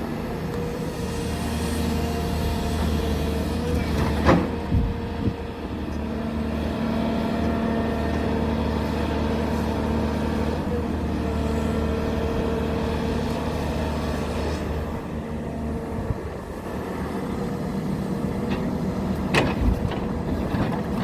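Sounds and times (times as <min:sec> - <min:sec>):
heavy diesel engine running: 0:00.0 - 0:21.0.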